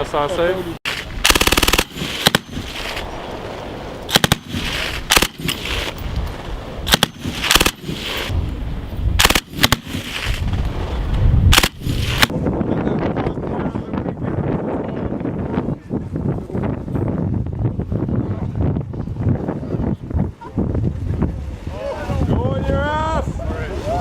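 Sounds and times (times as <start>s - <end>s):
gunshots: 1.2s - 3.1s, 4.1s - 5.9s, 6.9s - 8.3s, 9.2s - 10.4s, 11.5s - 12.3s.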